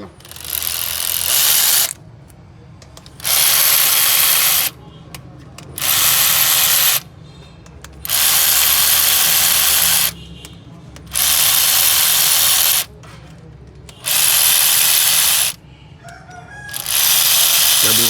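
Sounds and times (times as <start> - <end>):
power tool hissing whir: 0.2 - 2.0, 3.2 - 4.7, 5.8 - 7.0, 8.0 - 10.2, 11.1 - 12.9, 14.0 - 15.6, 16.7 - 18.0.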